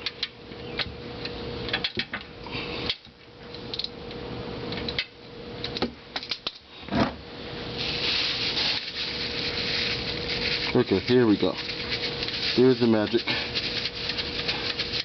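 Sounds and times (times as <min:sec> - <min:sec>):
faint steady hum: 0:00.0 - 0:15.0
plastic bag rustling: 0:07.7 - 0:15.0.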